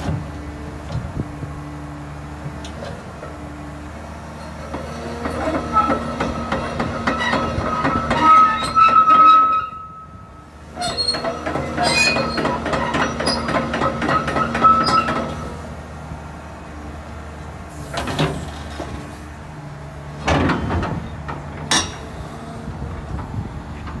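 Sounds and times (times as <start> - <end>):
excavator engine humming: 0.0 - 24.0
metal clanking and squeaking: 5.2 - 15.6, 20.2 - 22.1.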